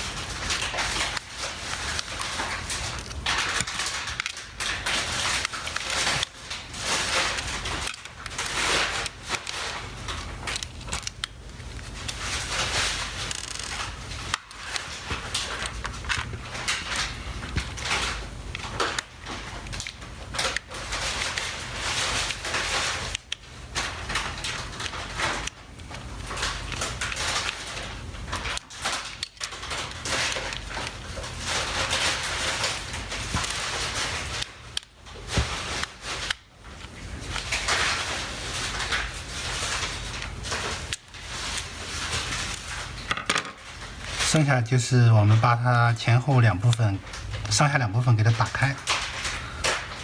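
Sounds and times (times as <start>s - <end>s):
plastic scraping and clicking: 0.0s - 50.0s
steady low hum: 14.0s - 18.6s.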